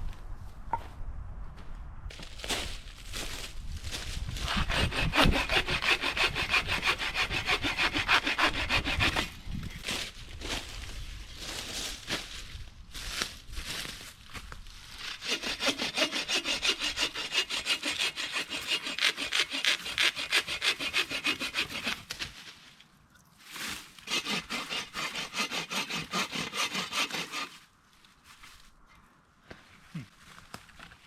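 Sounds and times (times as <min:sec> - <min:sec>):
hand saw cutting wood: 0:04.4 - 0:09.4, 0:15.0 - 0:22.2, 0:24.0 - 0:27.6.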